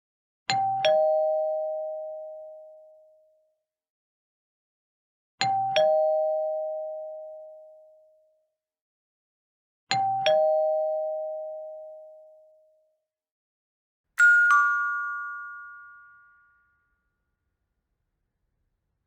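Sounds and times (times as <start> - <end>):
two-tone doorbell chime: 14.2 - 17.0.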